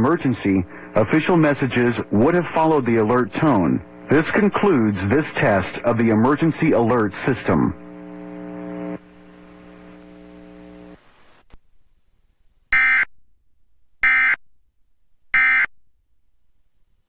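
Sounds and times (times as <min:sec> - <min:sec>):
low steady hum: 0:00.0 - 0:12.8.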